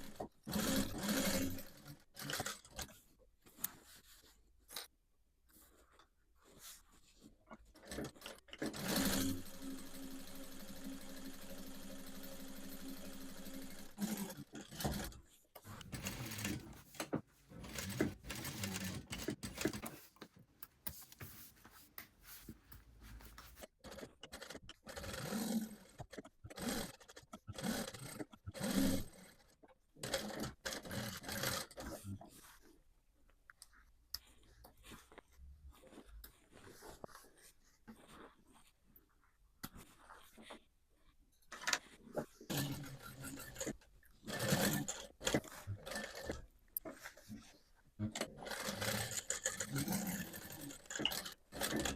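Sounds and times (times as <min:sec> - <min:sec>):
rustles scrapes and clicks: 0:14.8 - 0:24.0
electric sewing machine running: 0:15.8 - 0:20.1.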